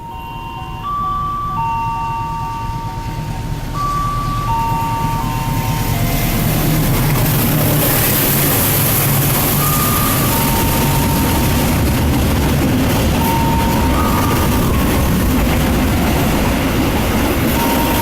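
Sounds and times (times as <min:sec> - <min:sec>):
chime melody: 0:00.0 - 0:12.3, 0:12.9 - 0:18.0
train rumbling and hissing past: 0:00.0 - 0:18.0.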